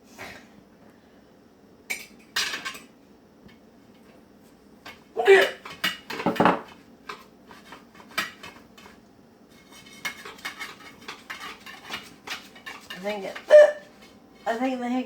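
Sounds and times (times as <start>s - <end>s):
dishes and cutlery clattering: 1.9s - 2.9s, 5.6s - 7.2s, 9.6s - 13.5s.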